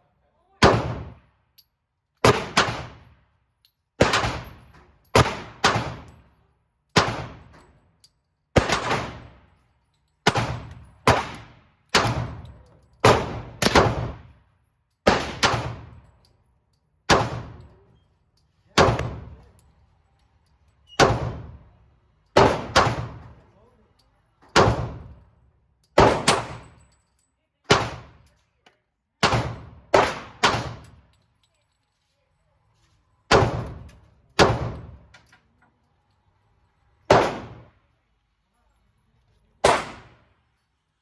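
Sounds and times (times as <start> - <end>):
pistol shots echoing: 0.6 - 1.2, 2.2 - 3.1, 4.0 - 4.6, 5.2 - 6.2, 7.0 - 7.5, 8.6 - 9.4, 10.2 - 14.3, 15.1 - 16.0, 17.1 - 17.7, 18.8 - 19.4, 22.4 - 23.4, 24.6 - 25.1, 26.0 - 26.8, 27.7 - 28.2, 29.2 - 31.0, 33.3 - 35.0, 37.1 - 37.7, 39.6 - 40.2.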